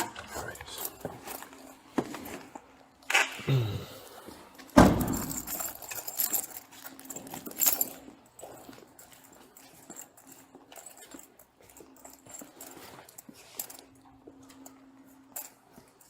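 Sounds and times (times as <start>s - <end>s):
metallic jangle: 4.7s - 16.0s
heavy thump: 4.8s - 5.5s.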